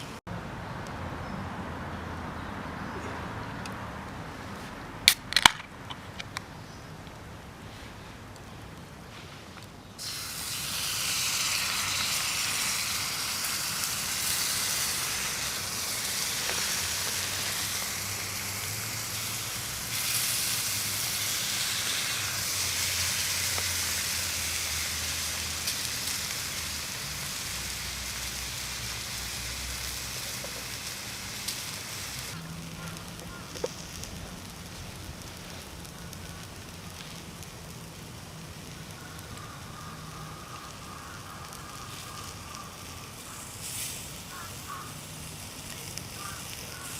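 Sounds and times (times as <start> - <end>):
meat sizzling on a grill: 10.0 - 46.9.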